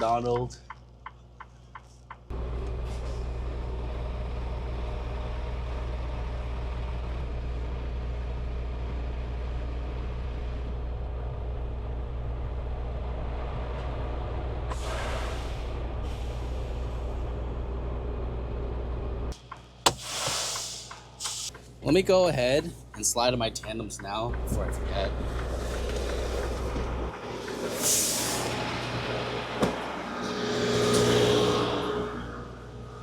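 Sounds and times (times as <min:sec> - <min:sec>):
diesel truck engine running: 0:02.2 - 0:19.9, 0:20.8 - 0:30.3
compressed air hissing: 0:14.7 - 0:17.0, 0:19.8 - 0:21.5, 0:27.7 - 0:28.6.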